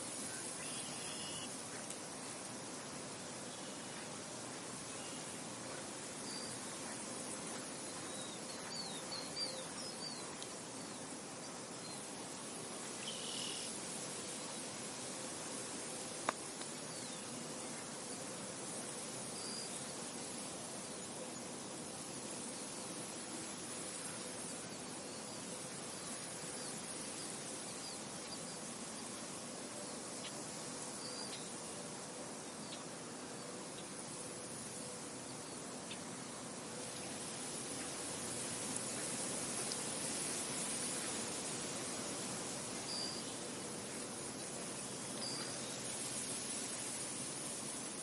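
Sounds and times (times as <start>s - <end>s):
insects: 0.0s - 48.0s
wind hiss: 0.0s - 48.0s
faint bird chirps: 0.2s - 1.9s, 7.8s - 11.1s, 13.0s - 13.7s, 30.2s - 31.6s, 42.8s - 43.4s.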